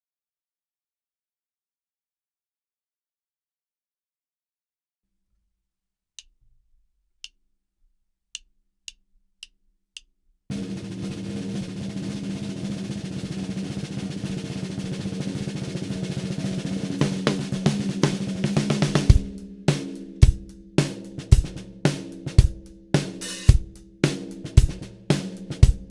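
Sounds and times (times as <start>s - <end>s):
snare drum roll: 10.5s - 25.9s.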